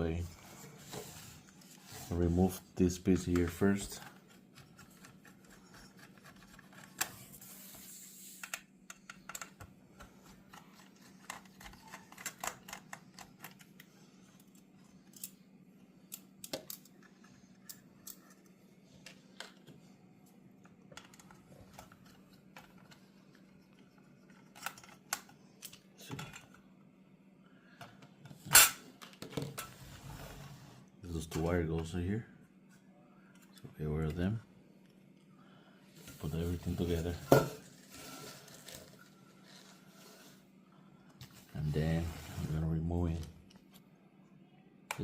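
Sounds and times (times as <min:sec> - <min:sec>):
plastic parts clicking and tapping: 0:08.4 - 0:13.9.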